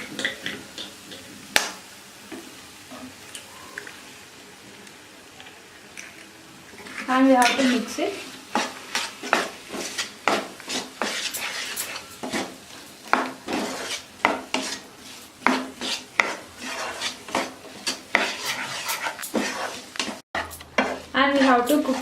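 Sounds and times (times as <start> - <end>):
food sizzling: 0.0 - 22.0
spatula scraping a pan: 6.7 - 22.0.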